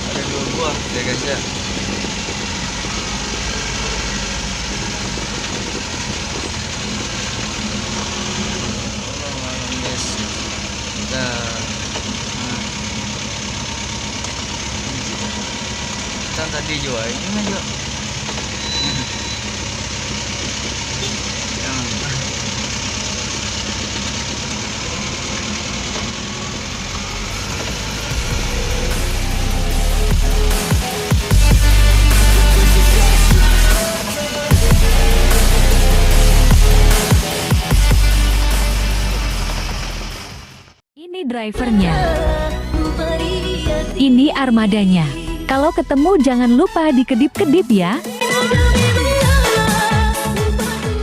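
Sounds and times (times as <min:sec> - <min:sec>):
road noise: 0:00.0 - 0:40.8, 0:41.6 - 0:51.0
vehicle engine running: 0:00.0 - 0:40.8, 0:41.5 - 0:51.0.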